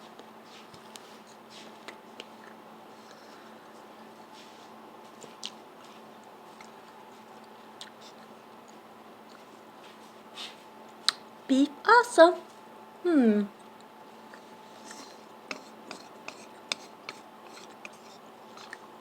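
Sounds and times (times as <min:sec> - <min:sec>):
steady hum: 0:00.0 - 0:19.0
person chewing noodles: 0:05.2 - 0:09.5, 0:14.3 - 0:18.9.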